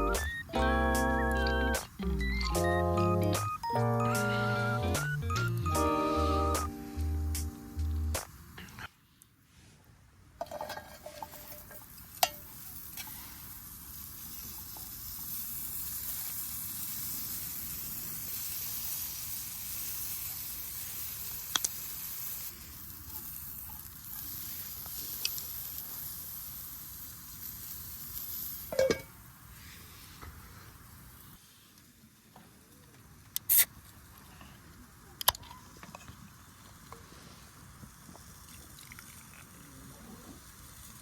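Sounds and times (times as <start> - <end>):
meat sizzling: 10.5 - 31.4, 33.4 - 34.2, 34.9 - 41.0.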